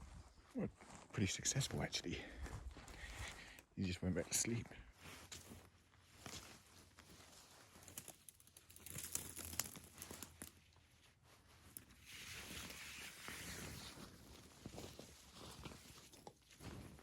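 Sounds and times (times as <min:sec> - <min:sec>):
poncho rustling and crinkling: 0:04.9 - 0:17.0.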